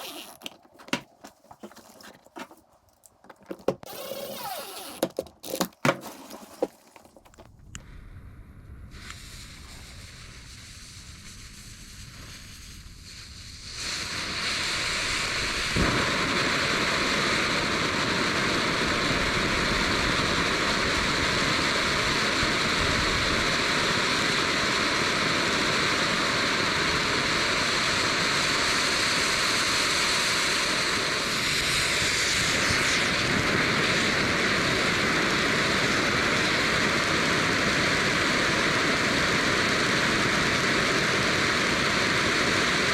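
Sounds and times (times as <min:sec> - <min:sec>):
firework fountain hissing sparks: 0:00.0 - 0:02.5, 0:03.7 - 0:07.9, 0:08.7 - 0:42.9
sharp pop: 0:15.7 - 0:16.2.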